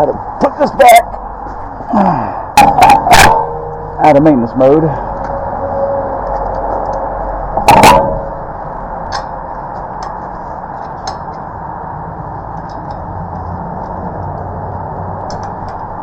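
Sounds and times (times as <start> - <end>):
steady background hum: 0.0 - 16.0
loud sharp clank: 2.6 - 4.0, 7.6 - 8.4.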